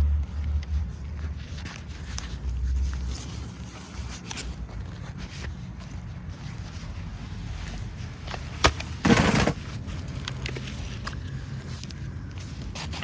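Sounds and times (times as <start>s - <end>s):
faint scrapes and ticks: 0.2s - 7.8s.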